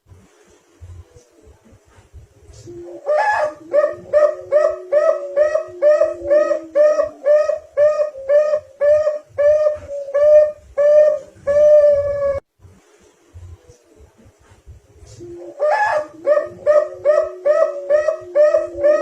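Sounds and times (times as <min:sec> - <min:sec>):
faint low hum: 0:00.0 - 0:19.0
dove cooing: 0:02.5 - 0:12.4, 0:15.1 - 0:19.0.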